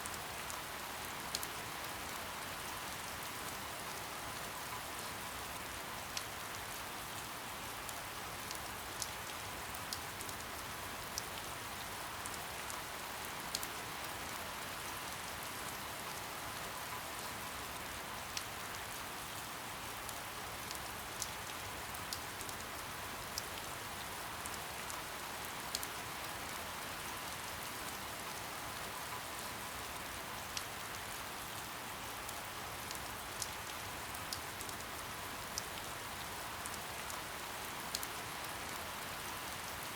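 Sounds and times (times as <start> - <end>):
soft rain hiss: 0.0 - 39.9
raindrop ticks: 37.9 - 38.8.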